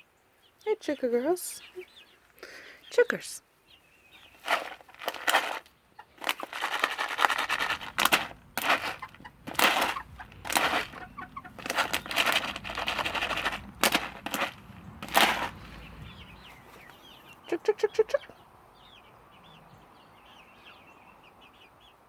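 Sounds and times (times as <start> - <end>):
hens clucking: 4.2 - 18.4
rattling scraping noise: 4.4 - 16.1.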